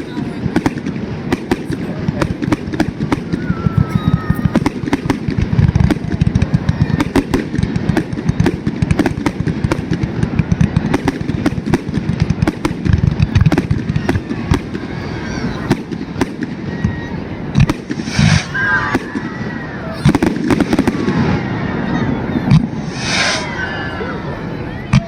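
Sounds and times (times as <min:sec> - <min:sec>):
fireworks crackling and popping: 0:00.0 - 0:25.0.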